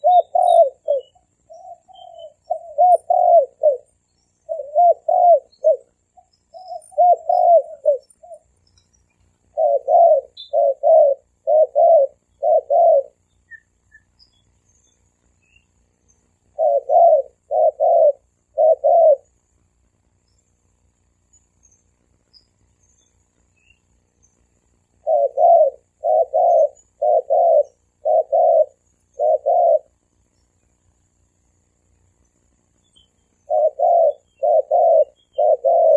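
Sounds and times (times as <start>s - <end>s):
dove cooing: 0.0s - 8.6s, 9.4s - 14.1s, 16.5s - 19.4s, 25.0s - 30.0s, 33.4s - 35.9s.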